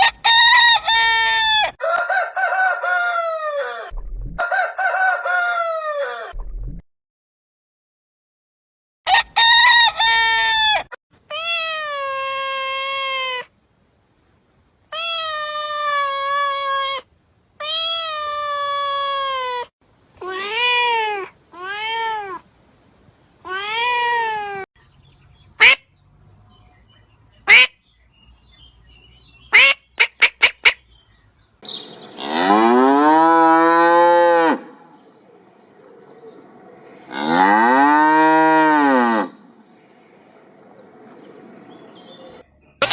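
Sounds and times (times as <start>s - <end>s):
pitched animal calls: 14.9s - 22.4s, 31.6s - 42.9s
cattle mooing: 32.2s - 34.8s, 37.0s - 39.4s.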